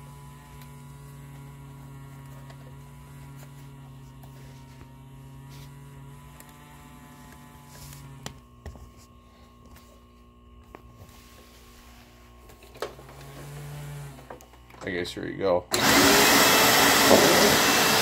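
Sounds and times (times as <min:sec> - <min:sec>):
vacuum cleaner motor humming: 0:00.0 - 0:14.7, 0:15.7 - 0:18.0.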